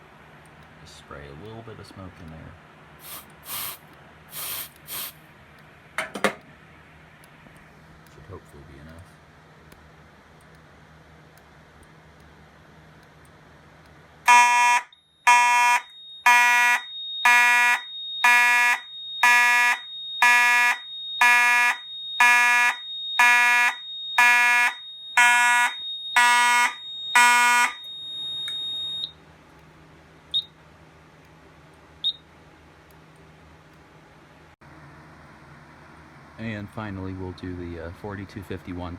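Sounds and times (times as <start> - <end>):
fire alarm horn blasts: 14.3 - 29.2.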